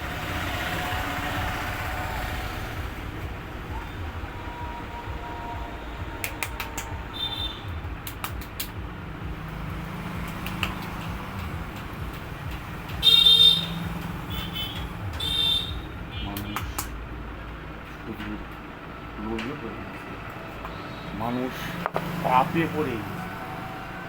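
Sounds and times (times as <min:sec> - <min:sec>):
street traffic rumble: 0:00.0 - 0:24.0
sharp clicks: 0:06.2 - 0:07.0, 0:08.0 - 0:08.8, 0:10.2 - 0:13.0, 0:16.3 - 0:17.0.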